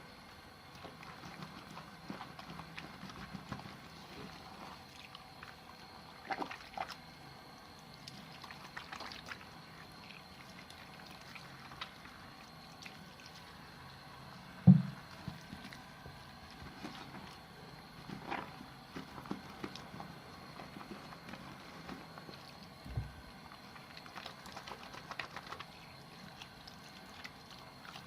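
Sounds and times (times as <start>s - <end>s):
soap lathering with water: 0.6s - 28.0s
loud thump: 14.7s - 14.9s.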